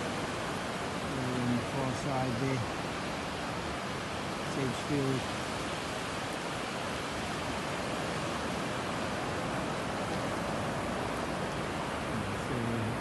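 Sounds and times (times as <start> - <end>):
ocean surf on a beach: 0.0 - 13.0.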